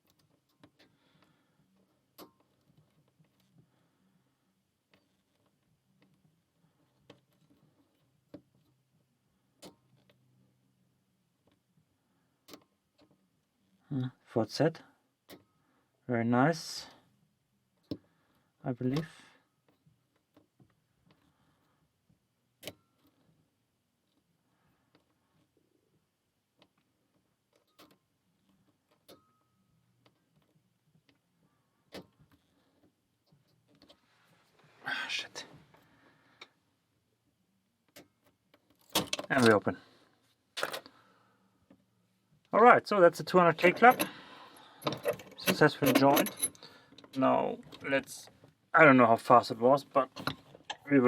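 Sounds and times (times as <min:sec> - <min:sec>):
lock pick clicking in padlock: 0:38.8 - 0:39.5, 0:43.6 - 0:44.2, 0:44.8 - 0:47.1.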